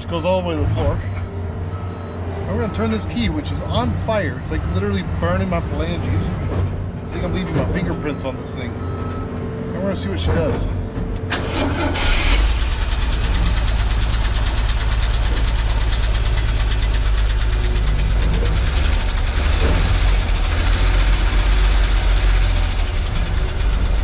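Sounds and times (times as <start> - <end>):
engine cranking: 11.2 - 24.0
engine running roughly: 11.2 - 24.0.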